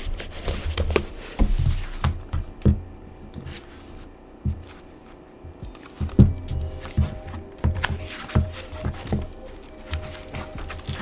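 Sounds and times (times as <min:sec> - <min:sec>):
paper rustling: 0:00.0 - 0:02.6, 0:03.4 - 0:11.0
faint background music: 0:04.6 - 0:11.0.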